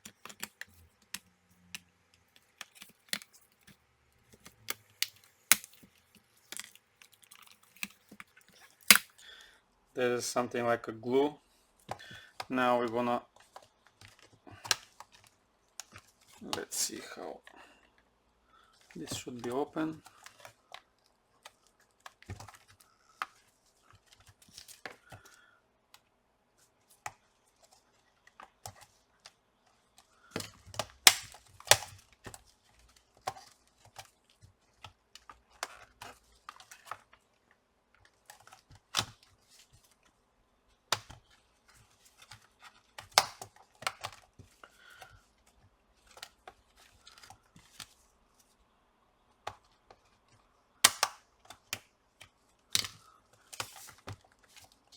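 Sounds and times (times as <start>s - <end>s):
plastic clips snapping: 4.4s - 5.9s, 8.8s - 9.1s, 30.8s - 31.9s, 50.8s - 51.2s
adhesive scraping and tearing: 4.4s - 9.2s.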